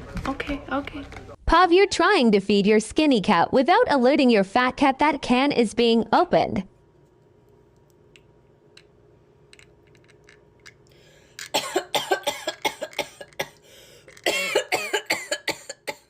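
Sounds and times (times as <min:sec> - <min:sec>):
person coughing loudly: 0:11.4 - 0:13.6, 0:14.2 - 0:16.0.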